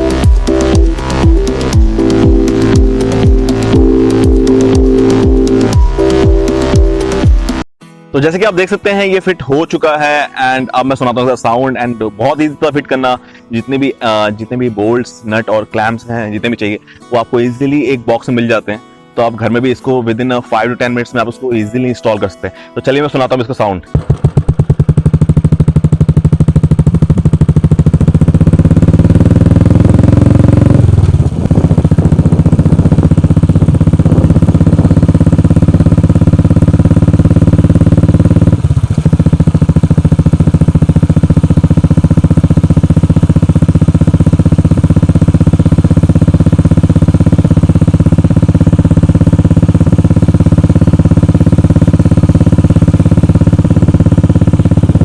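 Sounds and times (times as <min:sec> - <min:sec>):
motorcycle engine idling and revving: 0:00.0 - 0:07.7, 0:23.9 - 0:55.0.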